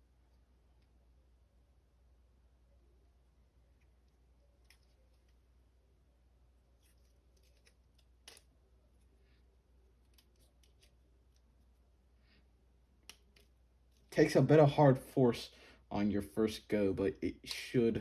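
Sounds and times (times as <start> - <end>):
plastic toy parts clicking: 7.4 - 8.4.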